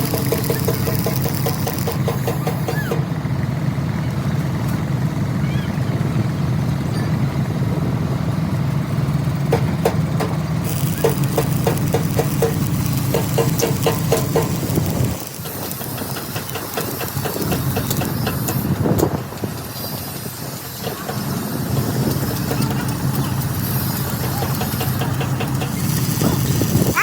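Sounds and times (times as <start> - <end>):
sharp clicks and crackles: 0.0 - 2.8, 9.5 - 19.6, 20.8 - 27.0
motor running: 0.0 - 3.1, 10.6 - 27.0.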